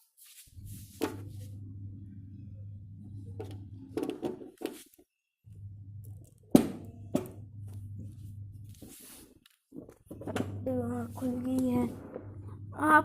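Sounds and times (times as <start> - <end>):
steady low hum: 0.5 - 4.1, 5.5 - 13.0.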